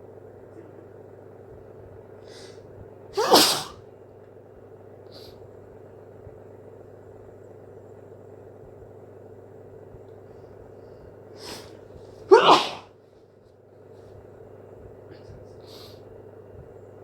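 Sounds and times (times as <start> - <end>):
faint steady hum: 0.0 - 17.0
person sneezing: 3.2 - 3.8, 11.4 - 12.9
sharp in-breath: 11.4 - 12.8.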